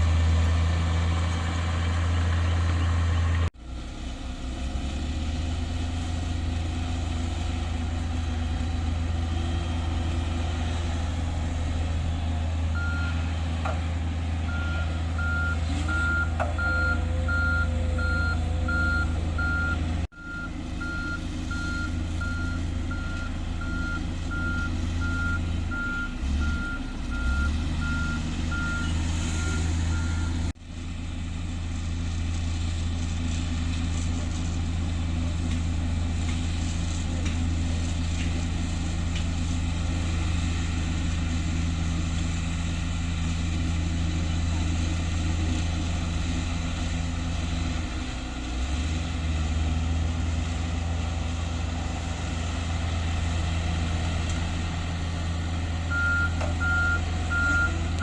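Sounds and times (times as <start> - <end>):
heavy machine diesel engines: 0.0 - 58.0
reversing alarm beeping: 12.7 - 13.2, 14.5 - 30.5, 55.9 - 58.0.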